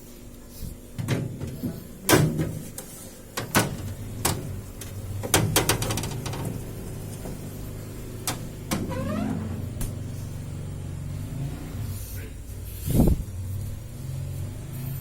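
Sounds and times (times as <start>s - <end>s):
refrigerator compressor hum: 0.0s - 15.0s
sharp knocks and clicks: 1.0s - 7.5s.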